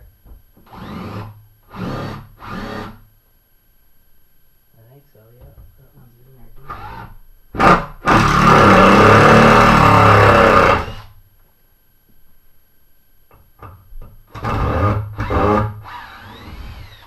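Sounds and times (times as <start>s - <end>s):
power drill running: 0.7s - 3.0s, 6.7s - 11.1s, 14.3s - 17.0s.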